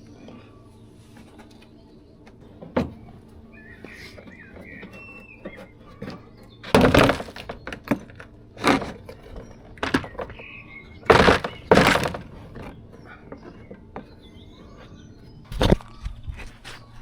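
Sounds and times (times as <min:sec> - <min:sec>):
plastic panel cracking and knocking: 0:04.7 - 0:12.8.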